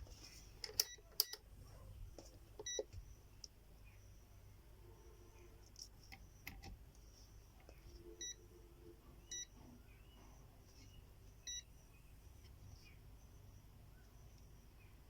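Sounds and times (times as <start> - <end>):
short electronic beeps: 11.5 - 11.7.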